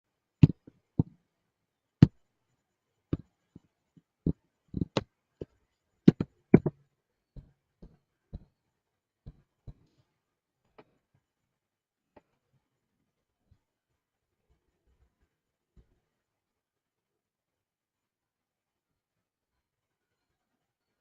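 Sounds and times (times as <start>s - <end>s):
sharp clicks and light knocks: 3.2s - 6.8s.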